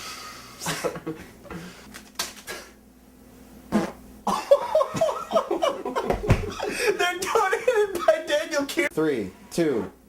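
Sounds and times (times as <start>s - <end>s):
person farting: 3.7s - 4.0s.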